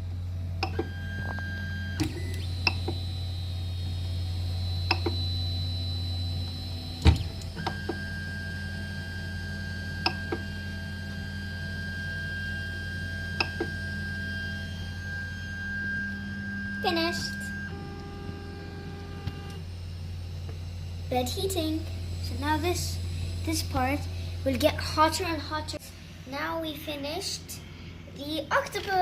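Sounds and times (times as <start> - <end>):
high electrical whine: 0.0 - 29.0
printer humming: 0.0 - 29.0
clicks: 4.9 - 5.2.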